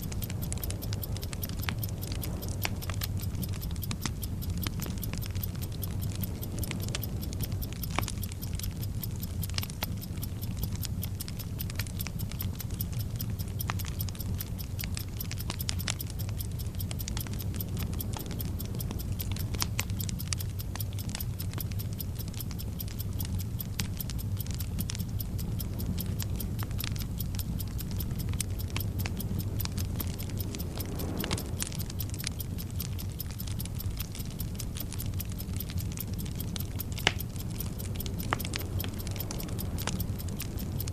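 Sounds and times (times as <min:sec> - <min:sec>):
burning fuse crackling sizzle: 0:00.0 - 0:40.9
clock-like ticking: 0:00.0 - 0:40.9
low rumble: 0:22.3 - 0:40.9.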